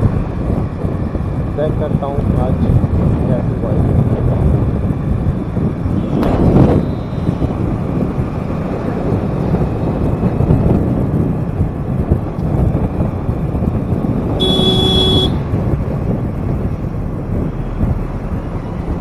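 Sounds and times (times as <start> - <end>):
road noise: 0.0 - 19.0
wind rushing over microphone: 0.0 - 19.0
vehicle horn honk: 14.4 - 15.4.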